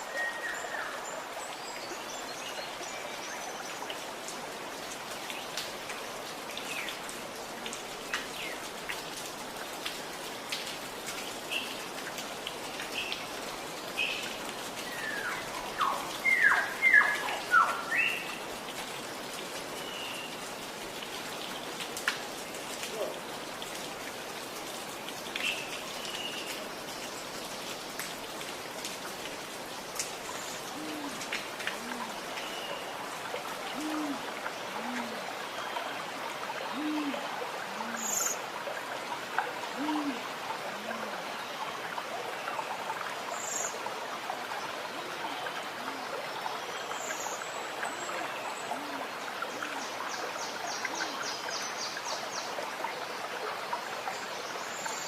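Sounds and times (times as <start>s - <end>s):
low hoots: 33.7s - 35.3s, 36.7s - 38.2s, 39.7s - 41.2s.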